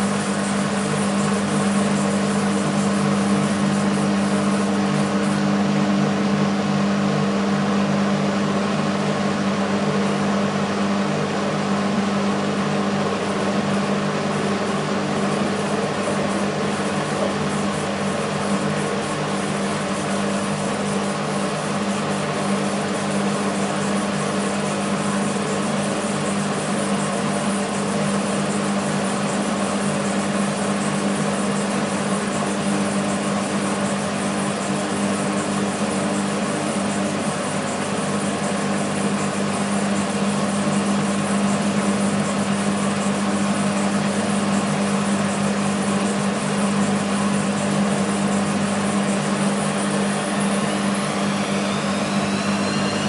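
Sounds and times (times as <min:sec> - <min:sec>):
washing machine drum spinning: 0:00.0 - 0:53.0
motor whine rising in pitch: 0:48.0 - 0:53.0.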